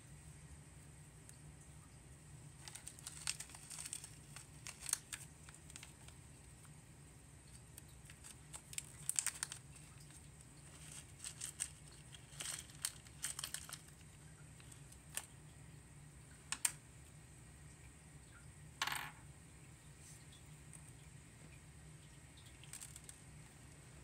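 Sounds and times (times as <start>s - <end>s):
crinkly rustle: 2.5s - 15.5s, 22.4s - 24.0s
slime crackling and clicking: 2.6s - 6.2s.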